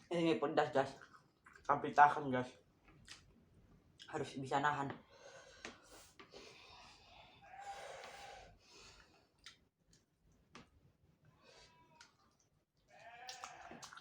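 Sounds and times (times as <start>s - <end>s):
wet chewing mouth clicks: 0.9s - 1.7s, 2.9s - 3.3s, 9.4s - 10.0s, 13.2s - 14.0s.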